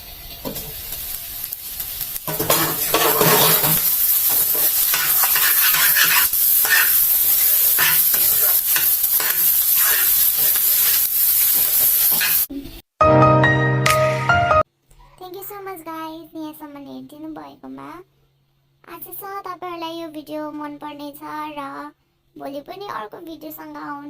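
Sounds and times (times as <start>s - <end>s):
rice sizzling in oil: 0.0s - 12.5s
spatula scraping a pan: 2.3s - 12.4s.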